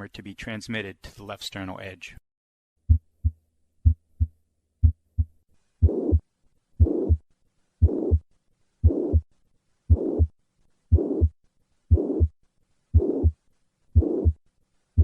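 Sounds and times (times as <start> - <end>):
heartbeat through stethoscope: 2.8 - 6.2, 6.8 - 7.2, 7.8 - 8.2, 8.8 - 9.3, 9.9 - 10.3, 10.9 - 12.4, 13.0 - 13.4, 14.0 - 14.4
heart murmur: 2.9 - 6.2, 6.8 - 7.2, 7.8 - 8.2, 8.8 - 9.2, 9.9 - 10.3, 10.9 - 12.3, 13.0 - 13.4, 14.0 - 14.4.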